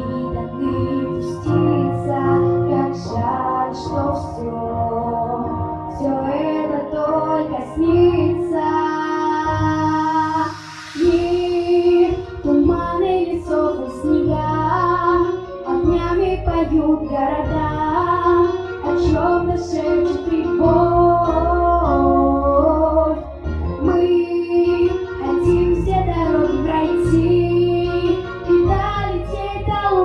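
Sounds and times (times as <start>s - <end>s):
girl singing: 0.0s - 23.2s, 23.8s - 30.0s
instrumental accompaniment: 0.0s - 30.0s.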